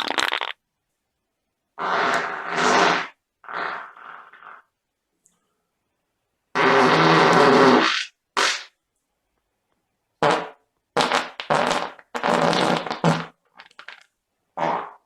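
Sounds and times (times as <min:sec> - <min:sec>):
fart sound effects: 0:00.0 - 0:00.6, 0:01.8 - 0:04.8, 0:06.5 - 0:08.8, 0:10.2 - 0:14.0, 0:14.6 - 0:15.0.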